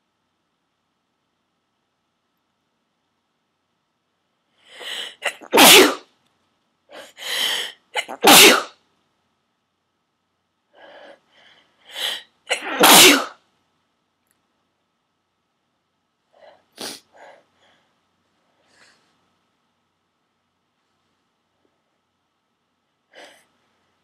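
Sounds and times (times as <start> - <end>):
person sneezing: 4.8 - 6.1, 6.9 - 8.8, 11.9 - 13.4, 16.7 - 17.2.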